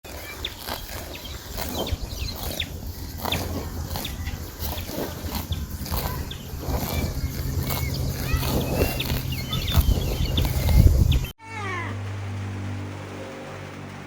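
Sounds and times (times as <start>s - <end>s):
birds chirping and calling: 0.1s - 11.4s
steady low rumble: 1.1s - 11.4s.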